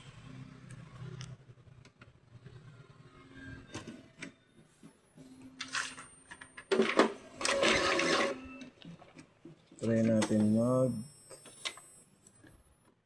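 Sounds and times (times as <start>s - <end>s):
printer motors whirring: 6.7s - 9.2s.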